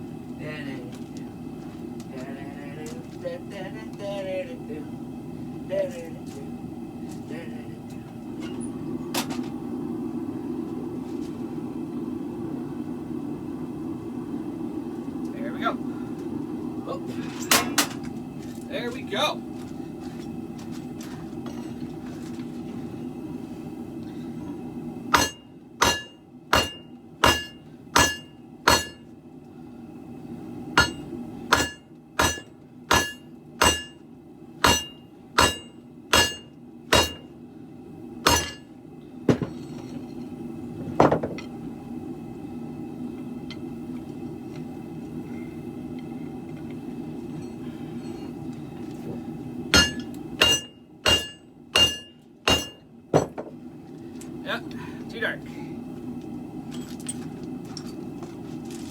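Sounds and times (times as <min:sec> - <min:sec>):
gas forge burner: 0:00.0 - 0:58.9
hammer ringing on anvil: 0:25.2 - 0:29.1, 0:30.8 - 0:34.0, 0:34.6 - 0:37.3, 0:38.3 - 0:38.6, 0:49.8 - 0:53.3.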